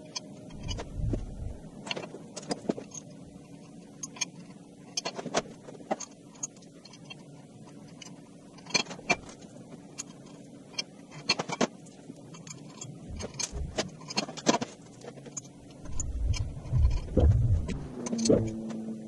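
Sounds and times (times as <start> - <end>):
heavy low thuds: 0.6 - 1.7, 13.1 - 13.8, 15.8 - 18.6.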